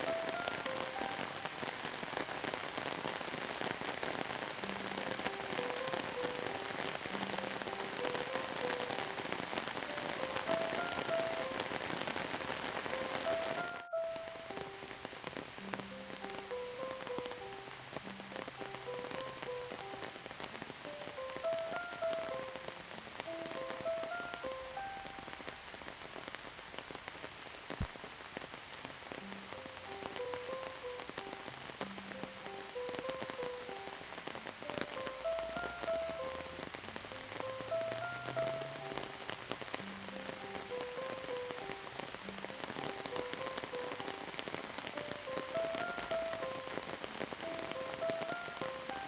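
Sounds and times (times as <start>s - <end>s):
soft ambient music: 0.0s - 3.4s, 4.2s - 25.6s, 29.2s - 49.0s
slow melody of held notes: 0.0s - 25.8s, 29.1s - 49.0s
raindrops ticking: 0.0s - 49.0s
steady rain falling: 0.0s - 49.0s.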